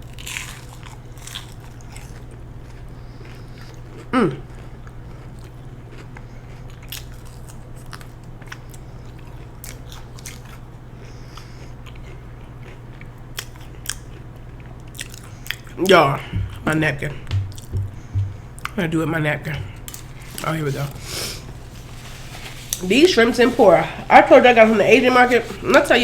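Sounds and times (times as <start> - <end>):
person chewing and crunching food: 0.0 - 18.8.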